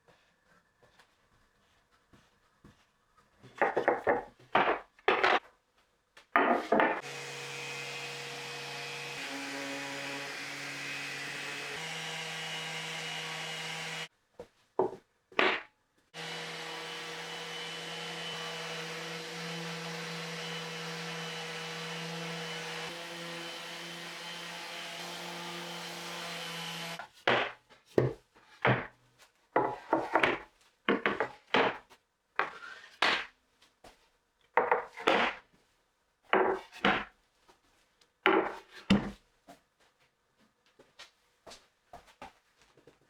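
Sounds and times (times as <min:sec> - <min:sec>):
hand sawing wood: 0:07.0 - 0:14.1, 0:16.2 - 0:27.5
woodworking machine humming: 0:07.0 - 0:14.1, 0:16.2 - 0:27.0.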